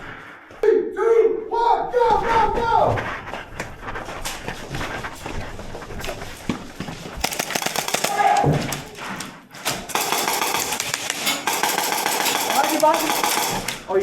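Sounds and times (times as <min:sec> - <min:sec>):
footsteps moving: 0:02.1 - 0:14.0
airsoft guns firing: 0:07.2 - 0:09.0, 0:09.8 - 0:14.0
person shouting: 0:08.0 - 0:08.6.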